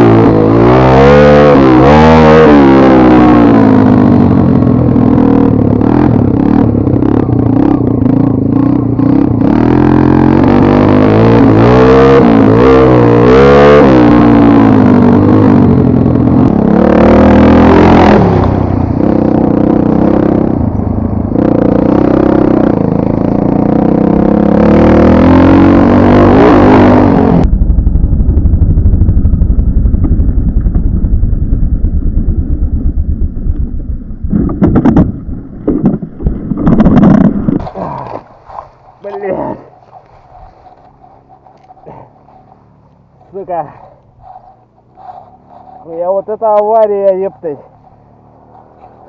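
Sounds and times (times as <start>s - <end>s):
motorcycle engine revving: 0.0s - 49.0s
knocks and clatter: 34.3s - 37.8s.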